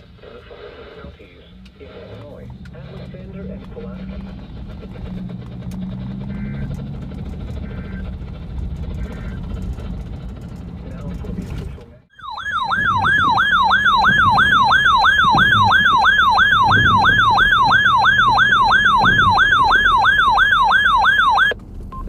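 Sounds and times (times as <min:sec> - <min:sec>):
warbling electronic alert tone: 0:12.1 - 0:21.6.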